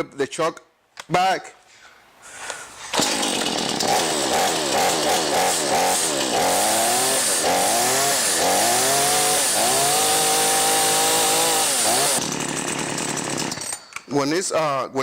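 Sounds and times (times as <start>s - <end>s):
chainsaw engine revving: 2.9s - 13.8s.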